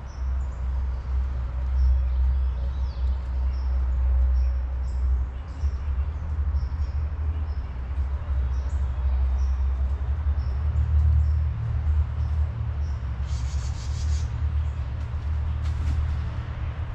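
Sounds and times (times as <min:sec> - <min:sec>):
small birds chirping: 0:00.0 - 0:16.4
steady low rumble: 0:00.0 - 0:16.9
buzzy bird call: 0:13.2 - 0:14.3.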